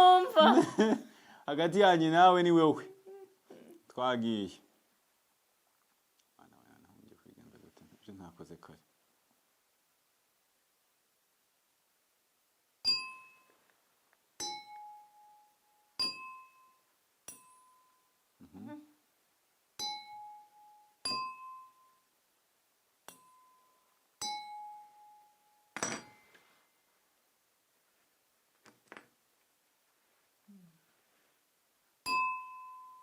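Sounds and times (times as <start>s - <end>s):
drinking glasses ringing ding: 12.8s - 13.6s, 14.4s - 18.1s, 19.8s - 22.1s, 23.1s - 26.3s, 32.0s - 33.0s
glass clattering clink: 21.0s - 21.9s, 25.7s - 26.3s, 32.0s - 33.0s.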